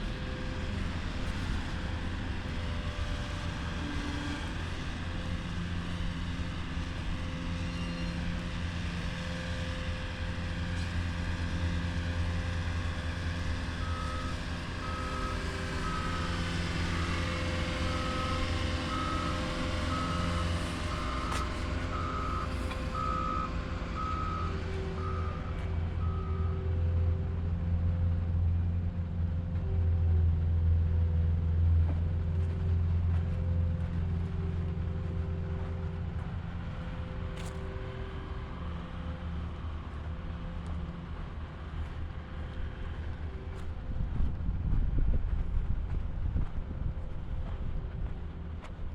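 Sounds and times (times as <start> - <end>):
heavy vehicle engine running: 0.0 - 48.9
reversing alarm beeping: 13.2 - 26.6.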